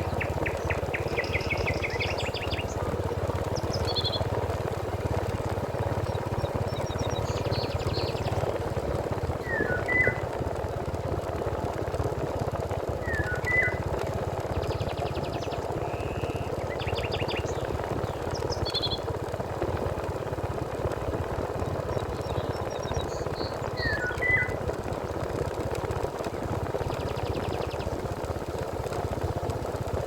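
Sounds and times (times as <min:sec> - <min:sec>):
birds chirping and trilling: 0:00.0 - 0:04.8, 0:05.8 - 0:08.8, 0:09.4 - 0:10.3, 0:13.0 - 0:13.8, 0:14.6 - 0:19.1, 0:21.9 - 0:24.6.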